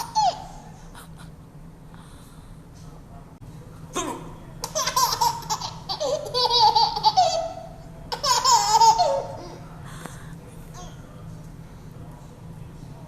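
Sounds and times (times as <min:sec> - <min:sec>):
baby giggling: 0:00.0 - 0:01.3, 0:04.6 - 0:09.6.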